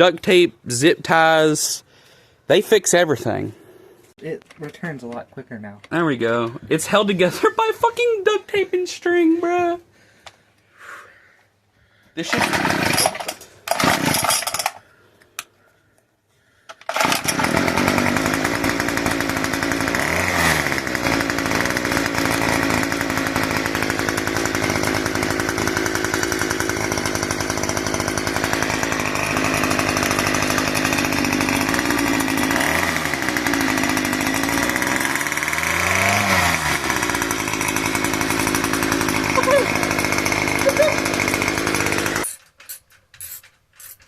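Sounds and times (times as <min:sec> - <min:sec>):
small two-stroke engine revving: 0:12.3 - 0:14.5, 0:16.9 - 0:42.3.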